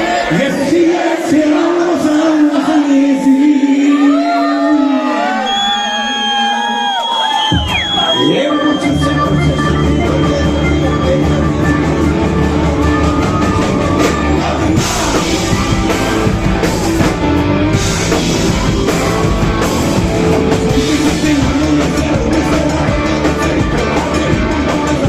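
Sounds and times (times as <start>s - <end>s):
live rock band playing: 7.5s - 25.0s.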